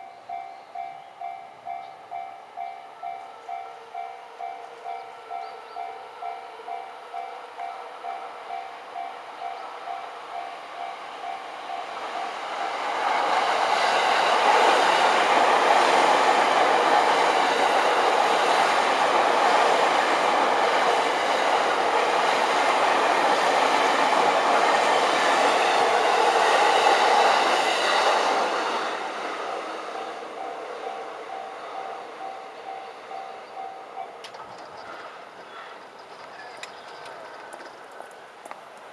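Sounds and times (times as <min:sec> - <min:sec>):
level-crossing warning bell: 0:00.0 - 0:12.6, 0:29.8 - 0:34.8
electric train passing: 0:00.0 - 0:38.9
train wheels on rails: 0:00.0 - 0:38.9.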